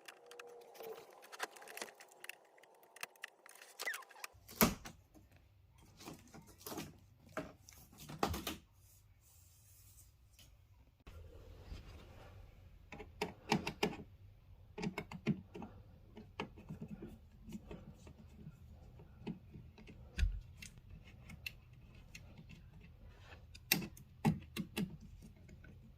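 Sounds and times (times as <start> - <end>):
hands handling plastic and metal parts: 0.0 - 8.6, 14.7 - 25.9.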